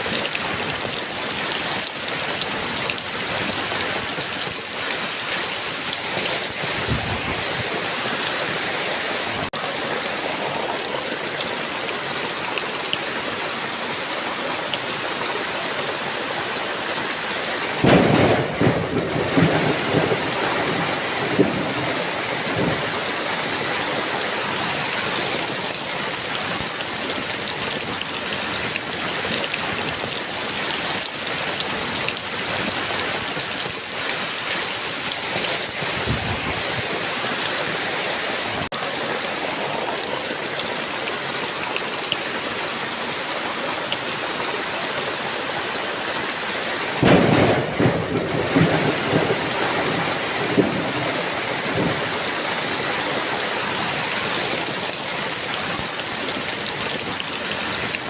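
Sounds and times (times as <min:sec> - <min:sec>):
heavy rain falling: 0:00.0 - 0:58.0
thunder clap rumbling: 0:17.8 - 0:23.0, 0:47.0 - 0:52.1.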